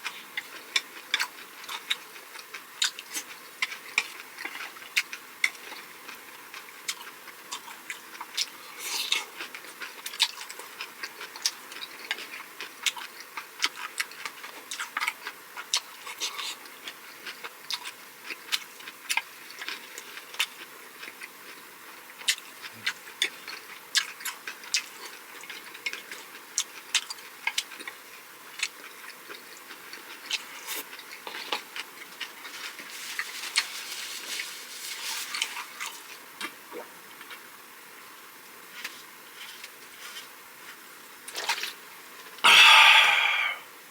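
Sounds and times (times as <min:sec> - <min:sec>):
mouth chewing food: 0:00.0 - 0:34.4.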